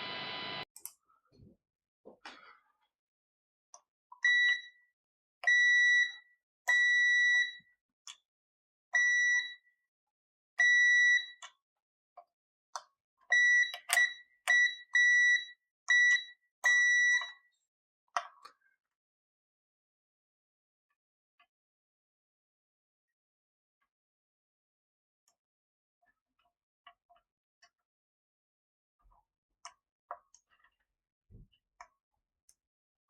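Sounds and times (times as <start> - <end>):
multimeter continuity beeps: 4.2 - 4.8, 5.4 - 7.7, 9.0 - 9.7, 10.6 - 11.4, 13.3 - 17.4.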